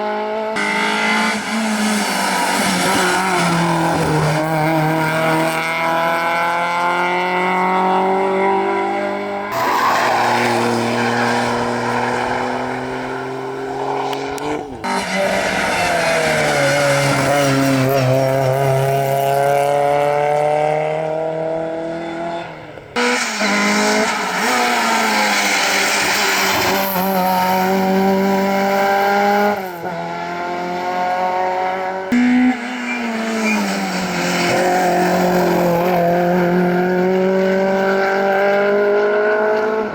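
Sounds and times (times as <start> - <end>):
rally car engines at full throttle: 0.0 - 39.9.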